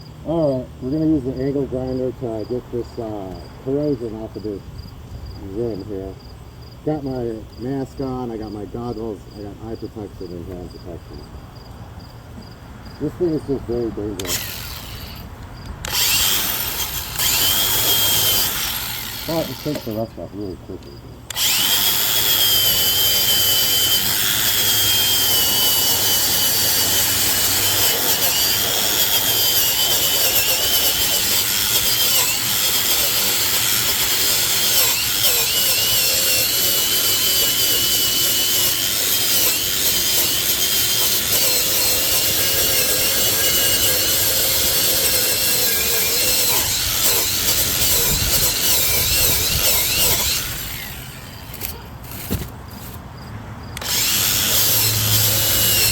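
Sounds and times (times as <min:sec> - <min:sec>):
angle grinder grinding metal: 0:12.9 - 0:53.0, 0:53.8 - 0:55.9.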